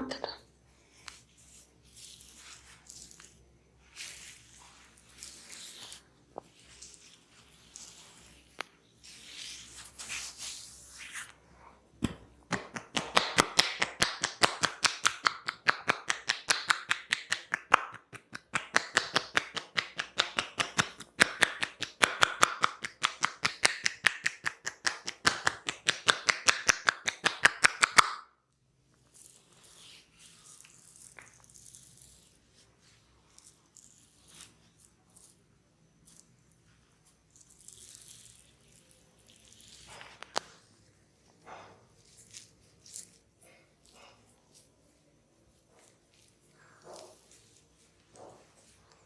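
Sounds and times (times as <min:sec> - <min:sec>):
rubbing and rustling of hair: 0:00.8 - 0:11.7, 0:29.0 - 0:35.4, 0:44.5 - 0:49.0
hands tapping on head: 0:12.0 - 0:28.2.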